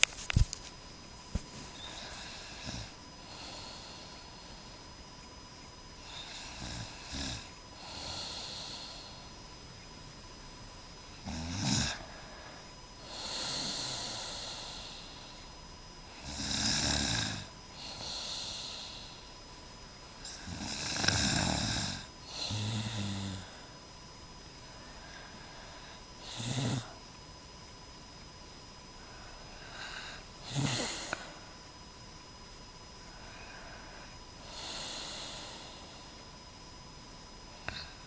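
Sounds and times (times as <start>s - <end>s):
woman snoring: 1.7s - 4.7s, 6.0s - 9.3s, 11.2s - 15.4s, 16.1s - 19.3s, 20.2s - 23.7s, 25.0s - 27.0s, 29.1s - 31.4s, 33.1s - 36.2s, 37.6s - 38.0s.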